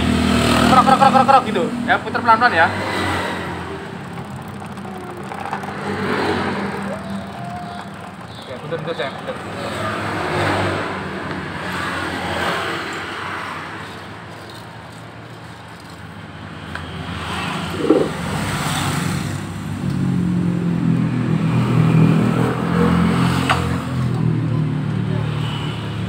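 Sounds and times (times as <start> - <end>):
motorcycle engine running: 0.0 - 11.8, 17.3 - 25.3
rough engine knocking: 3.2 - 10.4.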